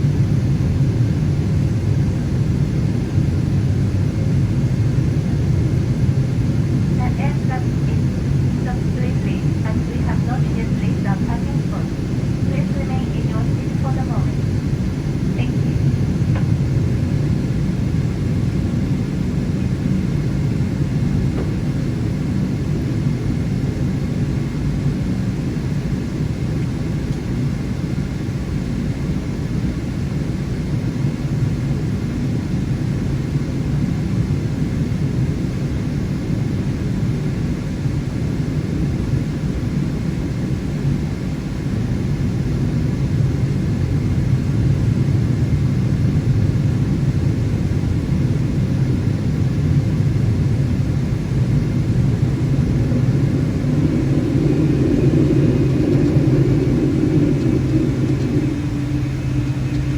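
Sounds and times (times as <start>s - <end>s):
airliner cabin rumble: 0.0s - 59.9s.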